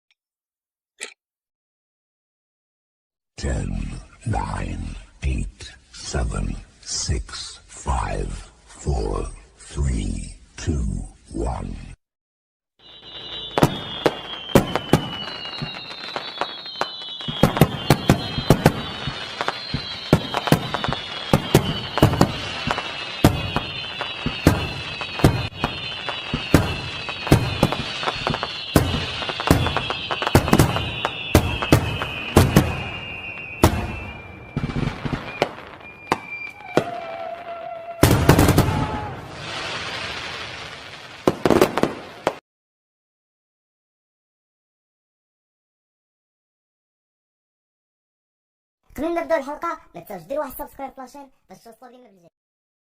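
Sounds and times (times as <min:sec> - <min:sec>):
high falling whistle: 0:12.8 - 0:40.0
fireworks bangs: 0:12.8 - 0:42.4
fireworks crackling: 0:12.8 - 0:42.4.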